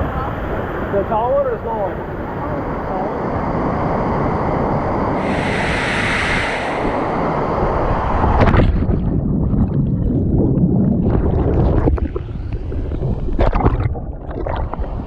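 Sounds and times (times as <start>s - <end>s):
wind rumbling on microphone: 0.0s - 15.0s.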